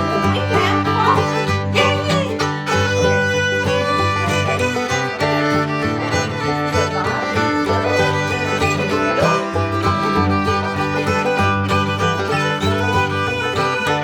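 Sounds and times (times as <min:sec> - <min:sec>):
plucked strings: 0:00.0 - 0:14.0
upbeat fiddle music: 0:00.0 - 0:14.0.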